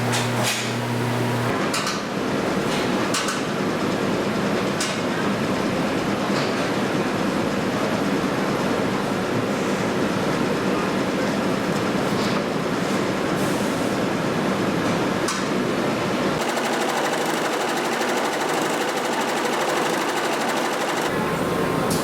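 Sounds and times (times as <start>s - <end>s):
workshop machinery running: 0.0s - 4.0s, 11.3s - 22.0s
embroidery machine stitching: 16.4s - 21.2s.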